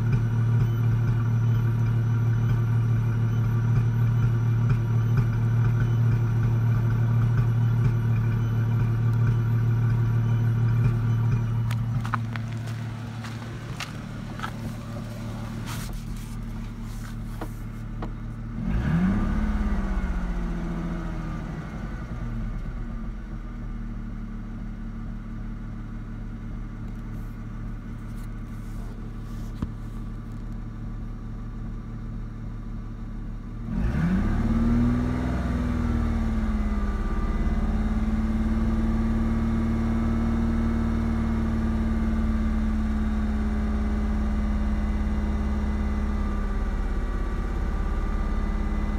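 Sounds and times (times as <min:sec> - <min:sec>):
car engine idling and revving: 0:00.0 - 0:48.9.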